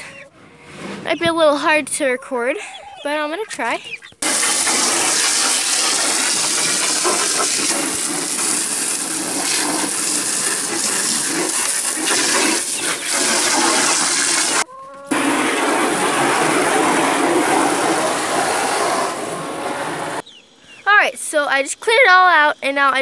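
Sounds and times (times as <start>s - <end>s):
garden hose spraying water: 4.2s - 19.6s.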